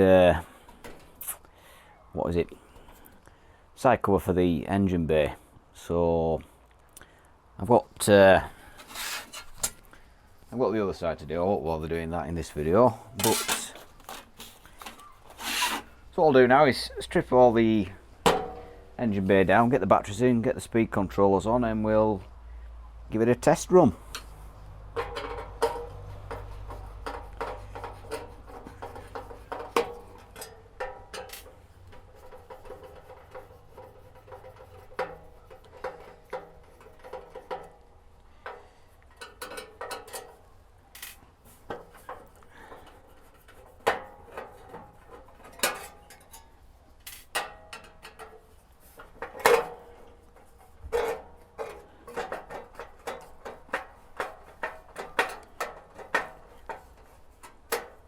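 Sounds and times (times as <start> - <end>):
metal tools clanking: 12.4 - 16.0, 27.0 - 33.0, 43.8 - 58.0.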